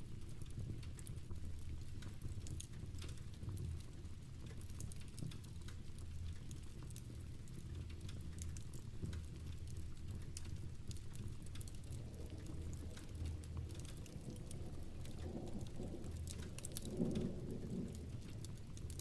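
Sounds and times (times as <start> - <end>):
fire crackling: 0.0 - 19.0
rain pattering: 0.0 - 19.0
low steady rumble: 9.4 - 19.0.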